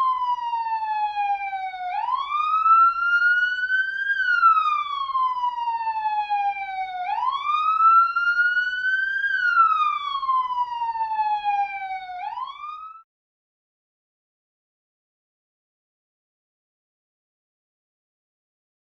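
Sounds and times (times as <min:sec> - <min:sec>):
ambulance siren wailing: 0:00.0 - 0:13.0.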